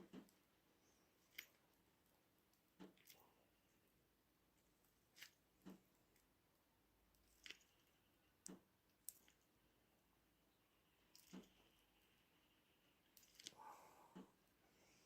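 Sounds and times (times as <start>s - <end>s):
faint clicks and taps: 7.1s - 9.5s.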